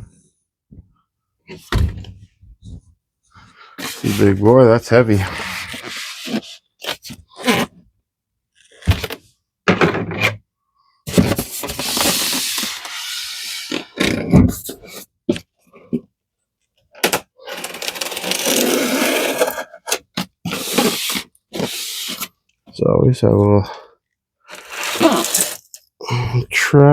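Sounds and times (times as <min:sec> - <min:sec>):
cardboard scraping and sliding: 0:03.8 - 0:07.7, 0:11.1 - 0:15.1, 0:17.5 - 0:22.4, 0:24.5 - 0:25.6.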